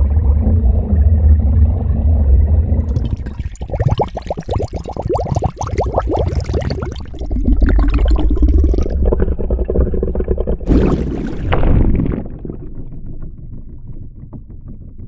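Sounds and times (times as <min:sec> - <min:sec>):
underwater bubbling with rumble: 0:00.0 - 0:15.0
hissing rush of bubbles: 0:02.9 - 0:09.4, 0:10.6 - 0:12.6.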